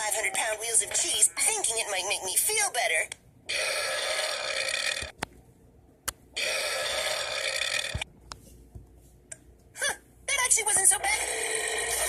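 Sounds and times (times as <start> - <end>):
long burps: 3.5 - 5.1, 6.4 - 8.0, 11.2 - 12.0.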